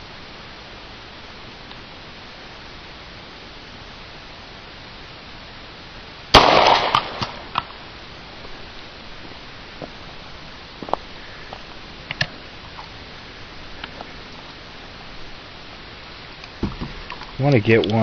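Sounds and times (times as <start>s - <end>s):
handgun shot echoing: 6.4s - 7.7s.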